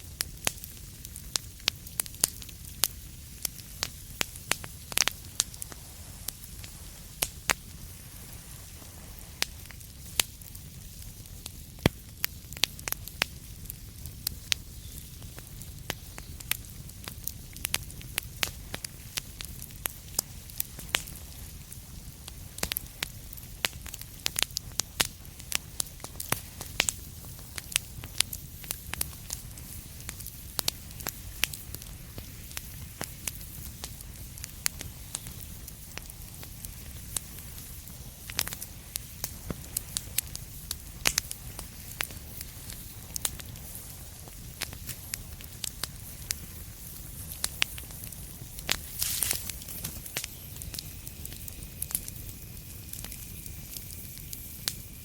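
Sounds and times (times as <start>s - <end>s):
low rumble and hiss: 0.0s - 55.0s
wood fire crackling: 0.0s - 55.0s.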